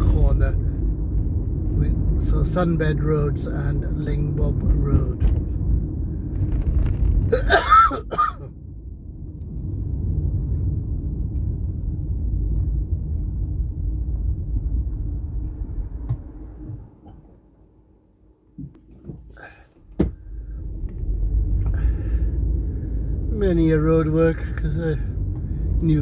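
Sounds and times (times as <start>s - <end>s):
car cabin rumble: 0.0s - 26.0s
person clearing throat: 7.3s - 8.5s.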